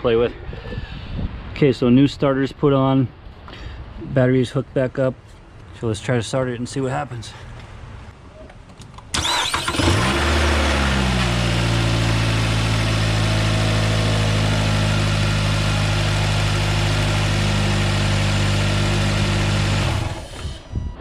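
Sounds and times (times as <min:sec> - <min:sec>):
car engine starting and idling: 0:09.0 - 0:20.8.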